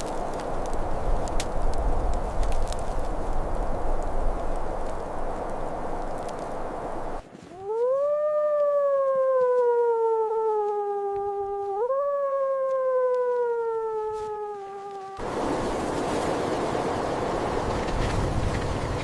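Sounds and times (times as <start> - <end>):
dog howling: 7.5 - 15.2.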